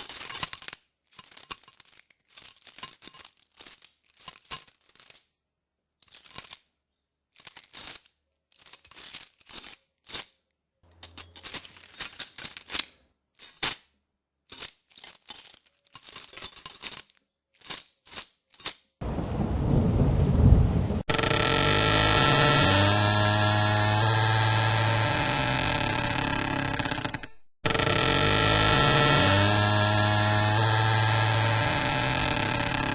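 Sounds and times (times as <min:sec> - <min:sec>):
small objects clinking and rattling: 0:00.0 - 0:05.3, 0:07.3 - 0:09.8, 0:11.0 - 0:13.8, 0:14.5 - 0:18.8
loud steady buzzing: 0:19.0 - 0:32.9.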